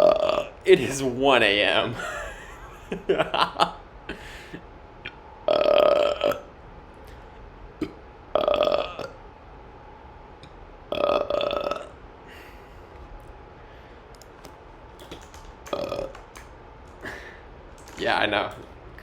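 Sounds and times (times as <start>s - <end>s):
person burping: 0.0s - 0.6s, 5.5s - 6.5s, 7.8s - 9.2s, 10.9s - 11.9s, 15.7s - 16.2s
faint clicks: 14.1s - 17.0s.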